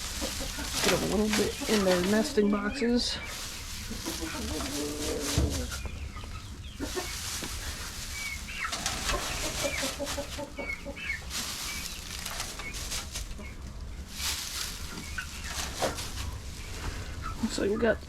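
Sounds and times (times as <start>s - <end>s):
hens chirping: 0.0s - 18.0s
hens clucking: 0.0s - 18.0s
rustling in coop: 0.0s - 18.0s.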